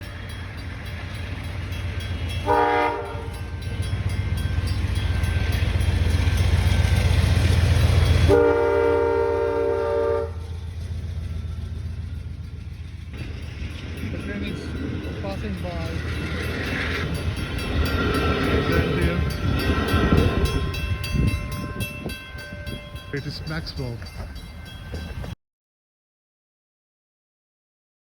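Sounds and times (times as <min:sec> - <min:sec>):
train rumbling: 0:00.0 - 0:25.4
train horn blasts: 0:02.4 - 0:03.5, 0:08.2 - 0:10.6.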